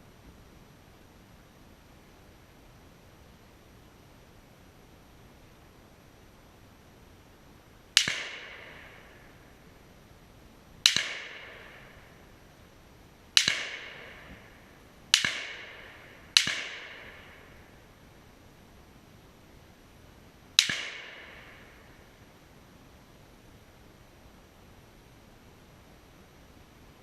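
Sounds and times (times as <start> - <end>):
gunshots with echo: 8.0 - 9.5, 10.8 - 12.3, 13.4 - 17.8, 20.6 - 22.0.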